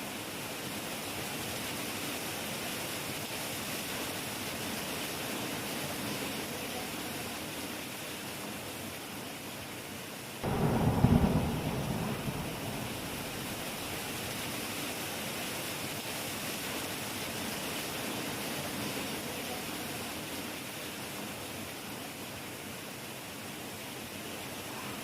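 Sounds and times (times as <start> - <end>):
heavy rain: 0.0 - 25.0
deep thunder clap: 10.4 - 14.4.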